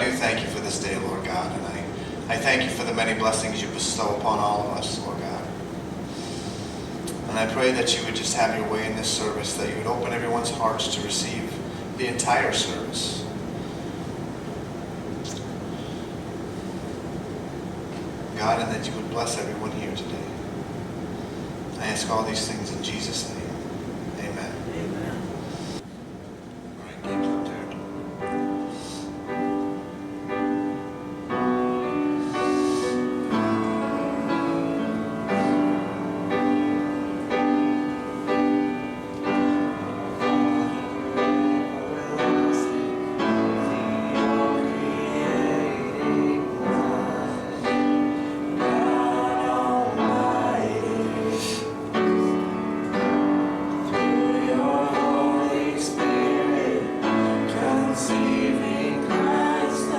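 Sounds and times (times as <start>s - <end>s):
keyboard chords: 27.0s - 59.9s
voices singing worship song: 31.9s - 37.5s, 39.2s - 59.9s.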